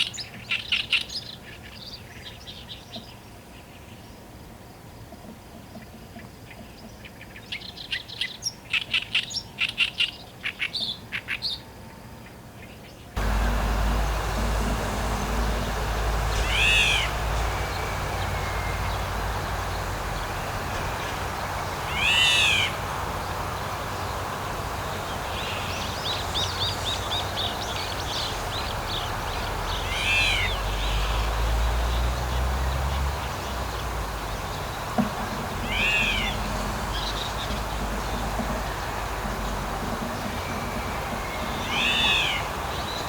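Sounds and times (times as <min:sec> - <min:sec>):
oriole calling: 0:13.2 - 0:43.0
steady hiss and low rumble: 0:13.2 - 0:43.0.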